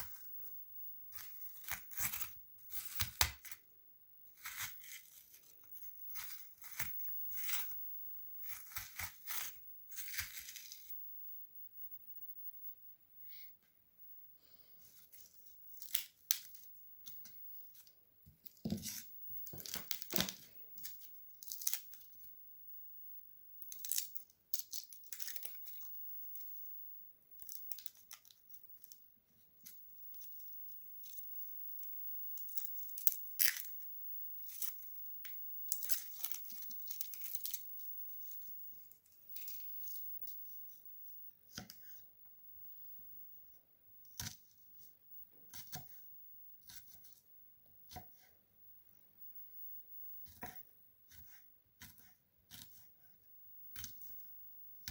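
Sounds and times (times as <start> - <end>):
crinkling and tearing handling noises: 15.0 - 22.2.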